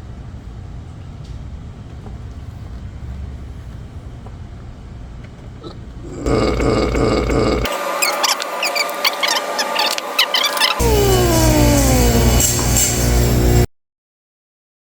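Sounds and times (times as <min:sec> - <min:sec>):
motor humming: 0:06.2 - 0:13.6.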